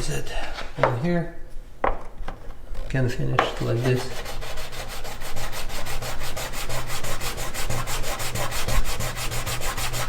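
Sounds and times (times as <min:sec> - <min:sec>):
sandpaper rubbing on paint: 0:03.6 - 0:10.0.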